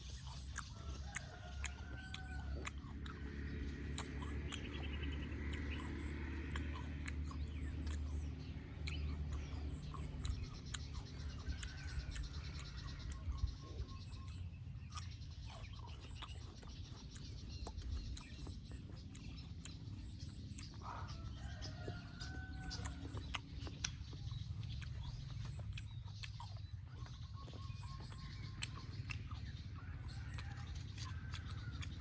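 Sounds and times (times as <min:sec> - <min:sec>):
rooster crowing: 0:00.8 - 0:02.8, 0:11.2 - 0:13.2, 0:20.8 - 0:23.3.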